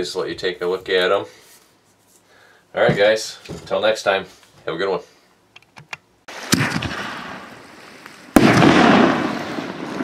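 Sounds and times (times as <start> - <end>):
firework launch thud: 6.3 - 7.5, 8.3 - 10.0
firework bang: 6.3 - 7.6, 8.3 - 10.0.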